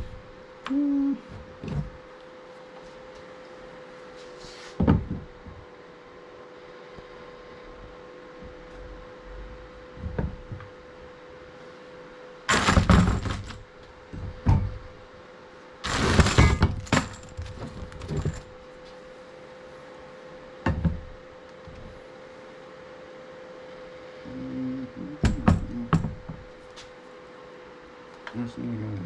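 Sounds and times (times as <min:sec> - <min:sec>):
faint hum: 0:00.0 - 0:29.0
metal hardware clattering: 0:12.5 - 0:13.6, 0:15.9 - 0:18.5.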